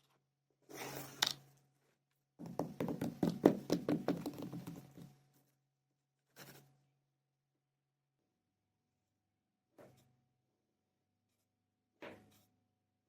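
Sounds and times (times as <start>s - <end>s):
sand being patted and tapped: 2.6s - 5.1s.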